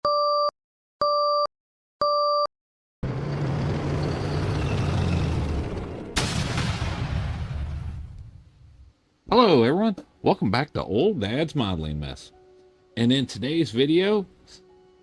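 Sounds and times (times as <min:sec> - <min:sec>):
sharp hit: 0:06.1 - 0:08.1.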